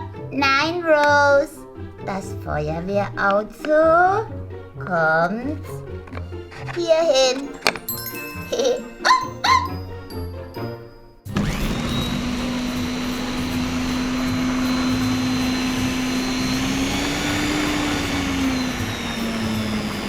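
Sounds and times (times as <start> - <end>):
electric blender running: 11.3 - 20.0.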